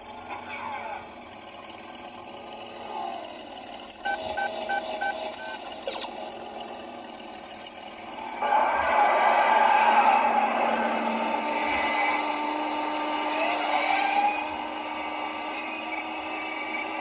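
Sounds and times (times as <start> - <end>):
short electronic beeps: 4.0 - 6.1.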